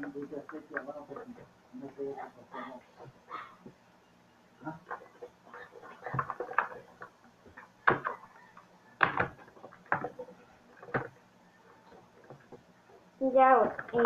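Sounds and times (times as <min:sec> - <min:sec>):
plastic case clicks and knocks: 0:06.0 - 0:08.2, 0:09.0 - 0:11.2.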